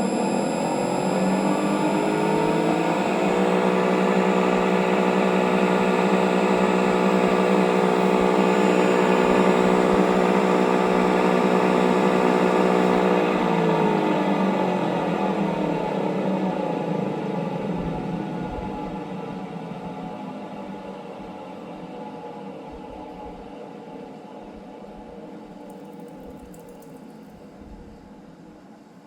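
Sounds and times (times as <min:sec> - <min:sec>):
electric motor spinning: 0:00.0 - 0:14.0.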